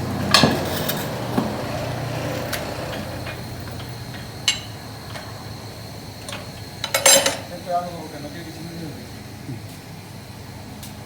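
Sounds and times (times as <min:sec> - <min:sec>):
low machine hum: 0:00.0 - 0:06.8.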